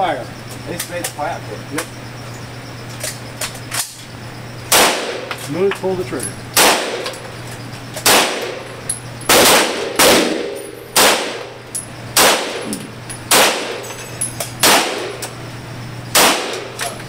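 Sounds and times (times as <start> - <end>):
pistol shots with ringing tail: 4.7 - 5.4, 6.6 - 7.2, 8.0 - 15.3, 16.1 - 17.0.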